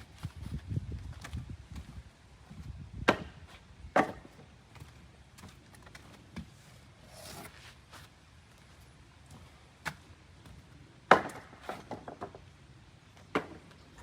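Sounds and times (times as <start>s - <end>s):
tool knocking on wooden boards: 3.0s - 4.5s, 11.1s - 12.4s.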